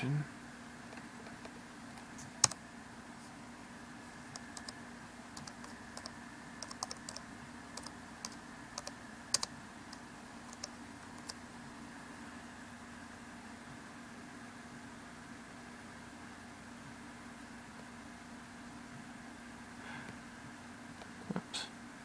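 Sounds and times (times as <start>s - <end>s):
faint hum: 0.0s - 22.0s
laptop keyboard typing: 2.4s - 2.6s, 4.3s - 11.4s.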